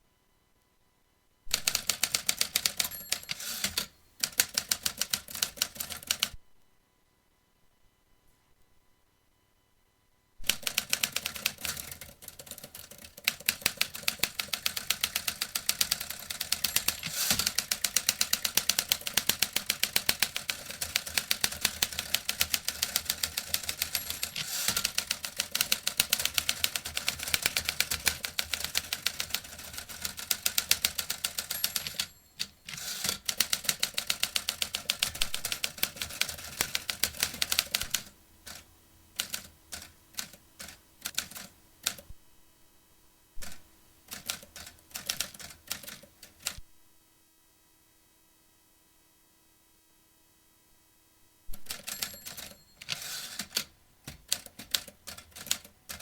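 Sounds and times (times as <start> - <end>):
typewriter keys clacking: 1.5 - 6.3, 10.5 - 38.6, 51.5 - 56.0.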